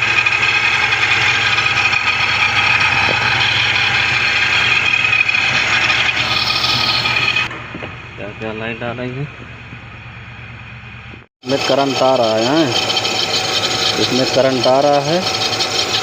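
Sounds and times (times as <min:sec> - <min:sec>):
car engine idling: 0:00.0 - 0:16.0
fuel pump whine: 0:00.0 - 0:16.0.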